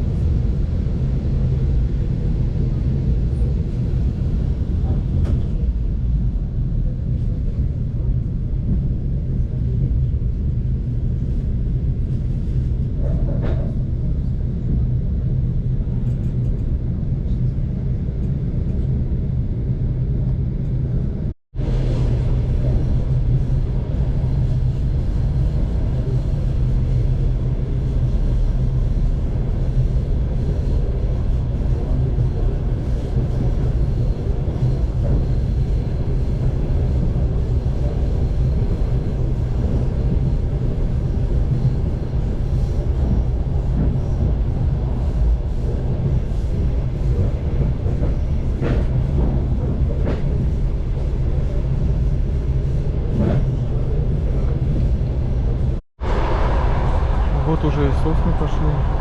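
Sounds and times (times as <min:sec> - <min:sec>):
train rumble inside passenger car: 0:00.0 - 0:59.0.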